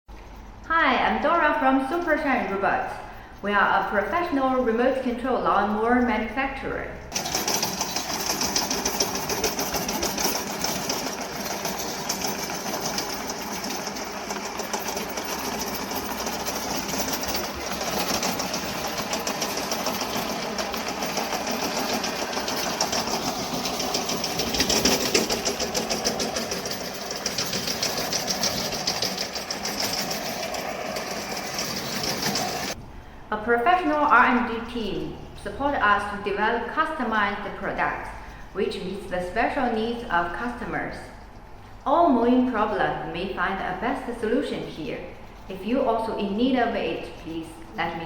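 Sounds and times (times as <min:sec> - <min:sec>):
lawn mower engine running: 0:07.1 - 0:32.8.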